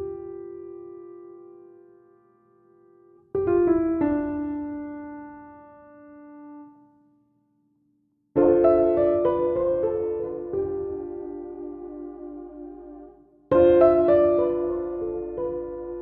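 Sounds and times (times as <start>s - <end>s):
piano notes ringing: 8.4s - 16.0s.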